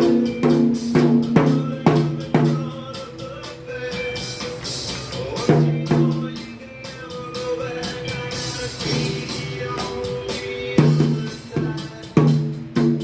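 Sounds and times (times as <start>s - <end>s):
drum hits with low ringing tone: 0.0s - 3.0s, 5.3s - 6.5s
rock music: 0.0s - 13.0s.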